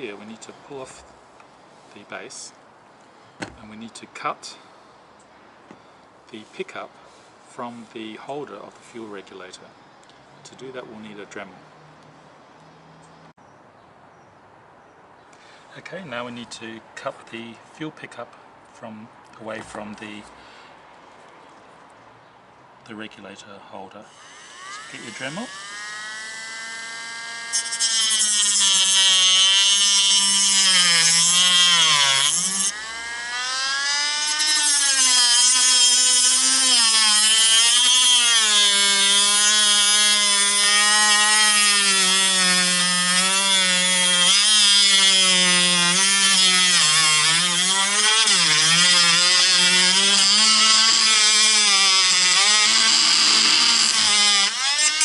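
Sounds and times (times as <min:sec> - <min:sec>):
rotary tool cutting: 0:24.0 - 0:55.0.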